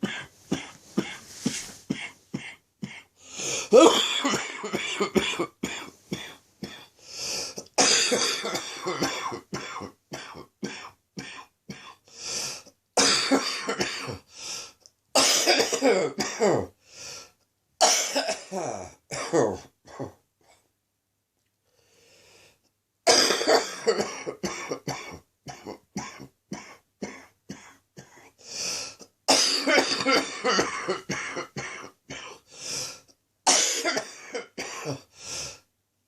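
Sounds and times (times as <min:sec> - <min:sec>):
person coughing chestily: 0:00.0 - 0:12.0, 0:13.0 - 0:14.3, 0:15.2 - 0:16.8, 0:17.8 - 0:20.2, 0:23.1 - 0:32.5, 0:33.4 - 0:35.1.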